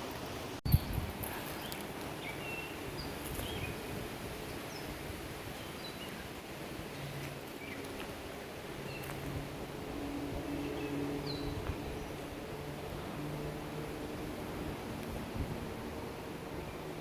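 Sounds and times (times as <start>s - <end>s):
small birds chirping: 0.7s - 9.3s, 10.5s - 12.4s.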